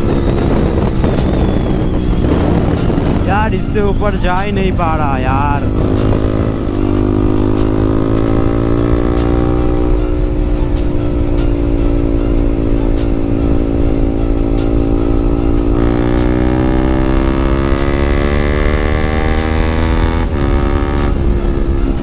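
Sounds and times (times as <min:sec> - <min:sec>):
motorcycle engine at high revs: 0:00.0 - 0:03.2, 0:05.2 - 0:22.0
wind rumble on microphone: 0:00.0 - 0:14.3.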